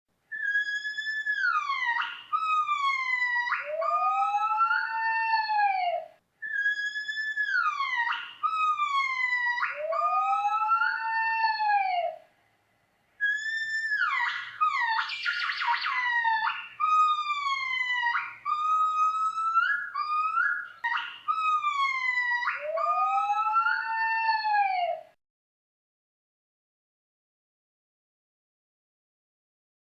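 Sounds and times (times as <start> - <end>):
gibbon calling: 0.3 - 12.2, 13.2 - 25.1.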